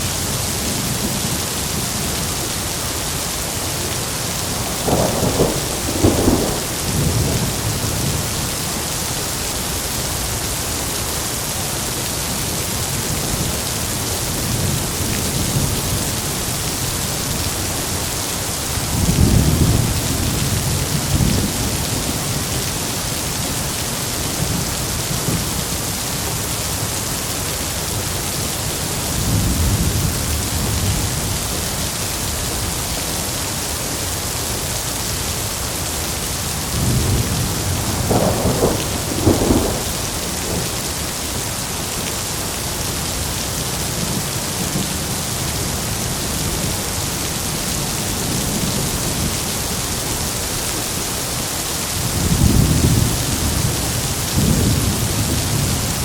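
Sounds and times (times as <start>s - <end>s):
heavy rain: 0.0s - 56.0s
thunder rumbling: 4.3s - 8.5s, 36.7s - 41.4s.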